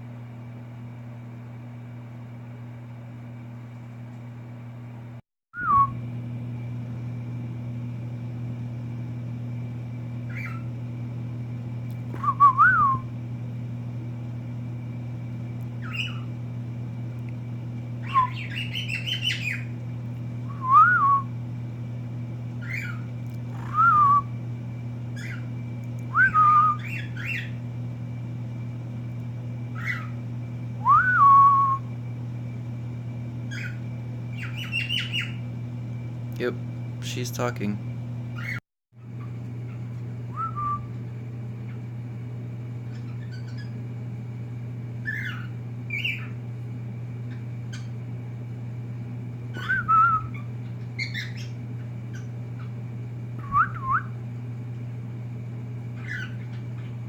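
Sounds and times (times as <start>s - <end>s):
low hum: 0.0s - 37.1s, 37.8s - 57.0s
cockatiel whistling: 5.6s - 5.9s, 10.3s - 10.7s, 12.2s - 13.0s, 15.8s - 16.3s, 18.0s - 19.7s, 20.5s - 21.3s, 22.6s - 23.0s, 23.6s - 24.3s, 26.1s - 27.6s, 29.7s - 30.1s, 30.8s - 31.8s, 40.3s - 40.9s, 45.0s - 46.4s, 49.6s - 52.3s, 53.4s - 54.1s, 56.0s - 56.9s
bird chirps and chatter: 18.0s - 19.7s.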